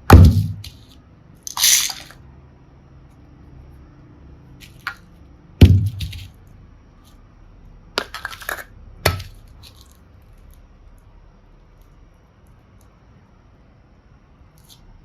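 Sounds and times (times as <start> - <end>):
heavy knock: 0.0 - 0.7, 5.6 - 6.2.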